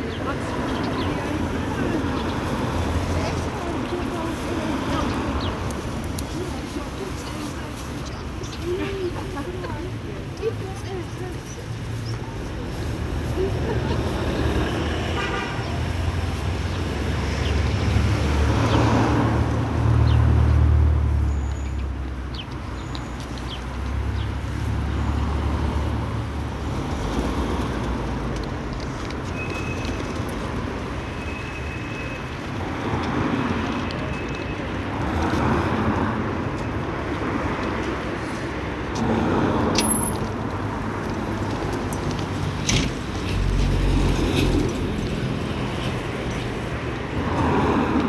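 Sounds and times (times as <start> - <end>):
traffic noise: 0.0 - 48.0
vehicle engine rumble: 32.4 - 48.0.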